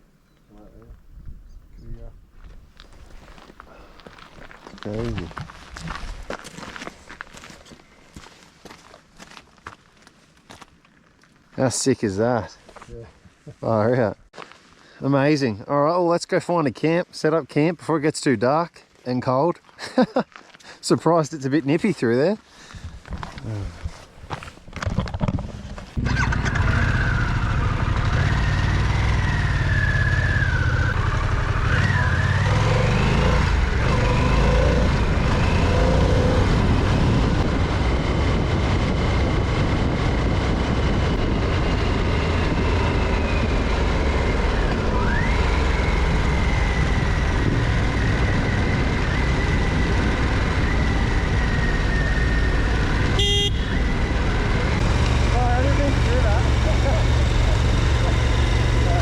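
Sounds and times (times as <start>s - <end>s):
motorcycle engine under way: 24.3s - 59.0s
heavy wind rush: 30.5s - 59.0s.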